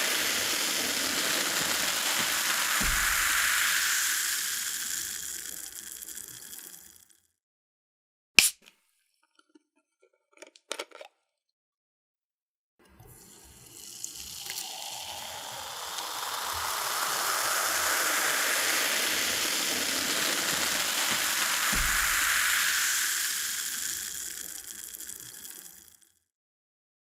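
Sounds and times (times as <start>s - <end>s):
cola pouring and fizzing: 0.0s - 7.2s, 12.8s - 26.1s.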